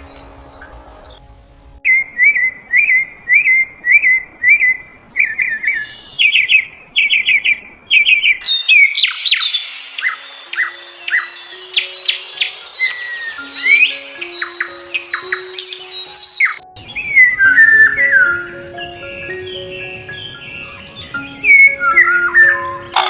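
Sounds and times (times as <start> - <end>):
bird chirping: 1.9 - 23.0
sharp falling bird calls: 2.2 - 17.0.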